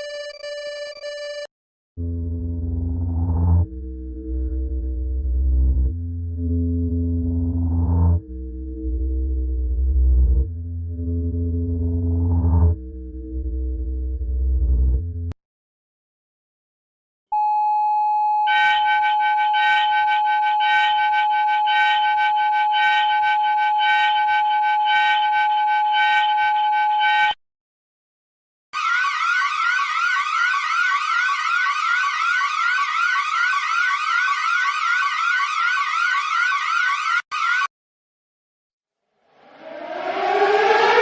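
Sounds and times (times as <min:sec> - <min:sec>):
steady electronic alarm tone: 0:00.0 - 0:15.3, 0:18.4 - 0:27.4, 0:28.8 - 0:37.7, 0:39.4 - 0:41.0
siren-like rising tone: 0:02.0 - 0:15.4, 0:18.5 - 0:27.4, 0:28.8 - 0:37.7, 0:39.2 - 0:41.0
pulsing chord of high tones: 0:39.4 - 0:41.0.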